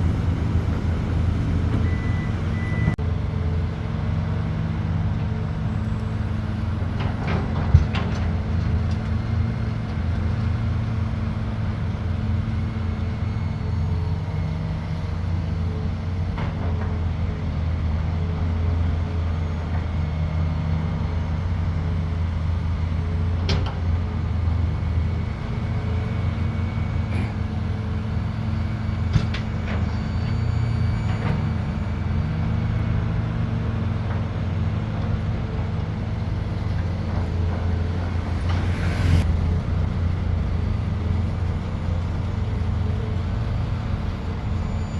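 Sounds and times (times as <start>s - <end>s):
diesel engine droning: 0.0s - 44.9s.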